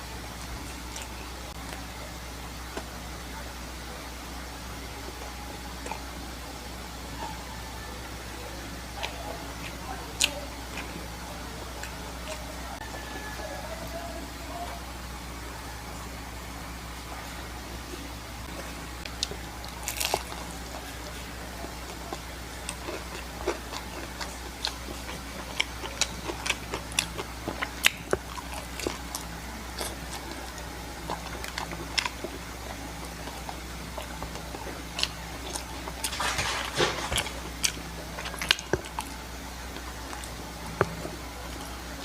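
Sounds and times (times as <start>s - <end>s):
steady low hum: 0.0s - 42.0s
close-miked chewing crunches: 0.2s - 1.9s, 8.6s - 13.5s, 18.5s - 42.0s.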